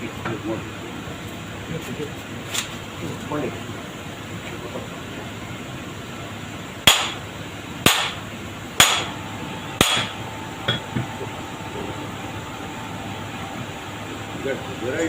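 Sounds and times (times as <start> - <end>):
hammer blows on metal: 9.8 - 11.1.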